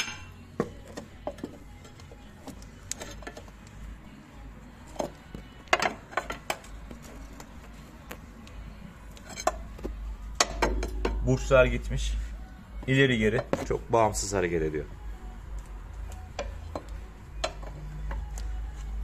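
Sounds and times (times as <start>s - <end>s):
metallic clinks and knocks: 9.2s - 11.2s.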